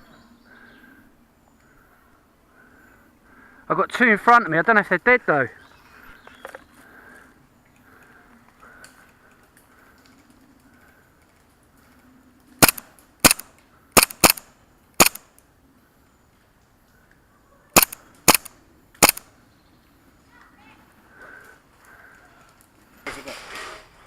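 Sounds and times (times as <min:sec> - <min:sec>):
airsoft gun shots: 0:12.6 - 0:15.3, 0:17.8 - 0:19.3.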